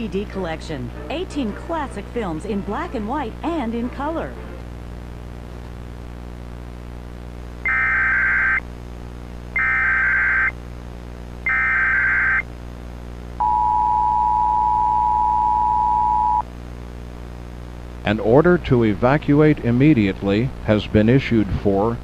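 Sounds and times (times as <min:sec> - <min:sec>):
digital data bursts: 0:07.7 - 0:08.6, 0:09.6 - 0:10.5, 0:11.5 - 0:12.4
two-tone attention signal: 0:07.7 - 0:08.6, 0:09.6 - 0:10.5, 0:11.5 - 0:12.4, 0:13.4 - 0:16.4.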